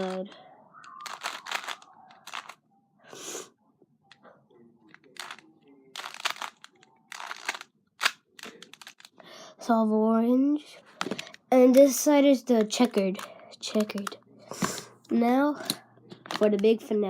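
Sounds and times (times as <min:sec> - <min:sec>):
puzzle cube clacking: 0:00.0 - 0:02.6, 0:04.9 - 0:09.2, 0:12.5 - 0:14.8.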